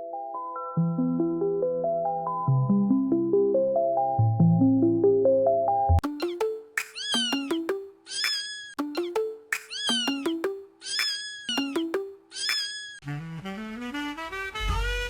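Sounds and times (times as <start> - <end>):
simple backing music: 6.0 - 8.0, 8.8 - 12.3
cat meowing: 7.0 - 7.4, 10.8 - 11.7.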